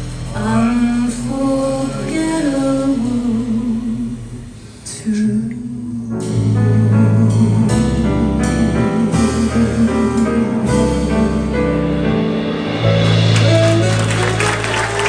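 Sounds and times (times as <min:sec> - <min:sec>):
live band playing slow ballad: 0:00.0 - 0:15.0
audience applause: 0:13.2 - 0:15.0.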